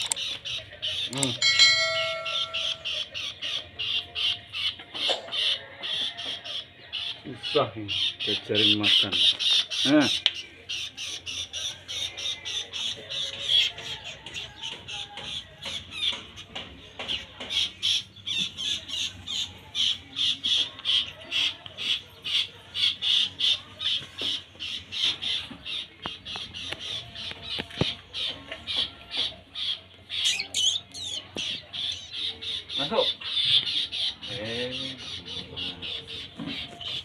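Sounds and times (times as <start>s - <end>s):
bird calling sharp notes: 1.0s - 4.8s, 29.6s - 32.2s.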